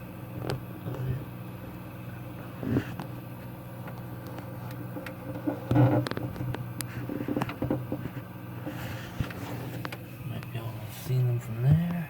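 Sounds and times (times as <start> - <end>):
low hum: 0.0 - 12.0
handling clicks and rustles: 2.7 - 11.2.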